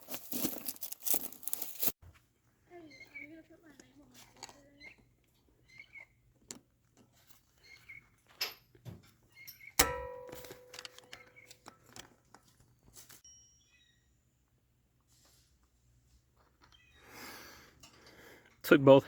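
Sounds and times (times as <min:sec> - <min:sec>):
tools and parts clicking: 0:09.4 - 0:12.5
loud metallic clang: 0:09.8 - 0:11.5.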